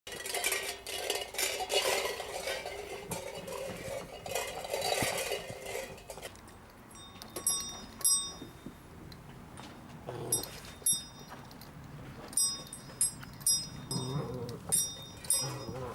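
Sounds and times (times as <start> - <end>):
metal dishes clattering: 0.1 - 6.4
ringing clinks: 0.1 - 8.7, 10.2 - 15.9.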